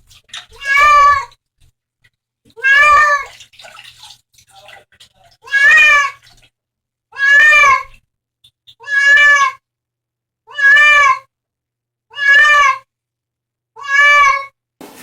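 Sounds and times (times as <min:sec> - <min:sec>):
cat meowing: 0:00.5 - 0:01.3, 0:02.5 - 0:03.3, 0:05.4 - 0:06.2, 0:07.1 - 0:08.0, 0:08.8 - 0:09.6, 0:10.5 - 0:11.3, 0:12.1 - 0:12.9, 0:13.8 - 0:14.5.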